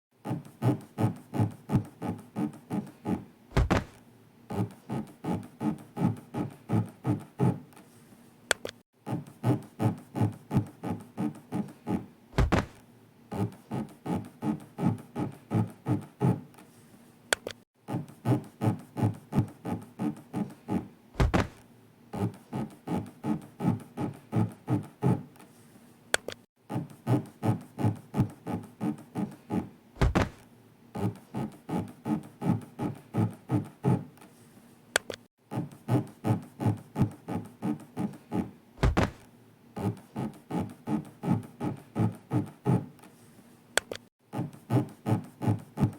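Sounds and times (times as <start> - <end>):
low thud: 3.6 - 4.0, 12.4 - 12.8, 21.2 - 21.6, 30.0 - 30.4, 38.8 - 39.2.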